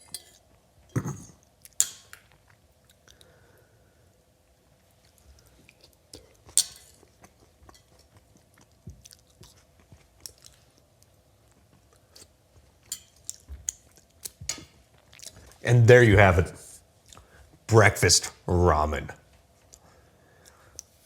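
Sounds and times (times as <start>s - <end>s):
person chewing food: 1.4s - 3.5s, 5.0s - 15.6s.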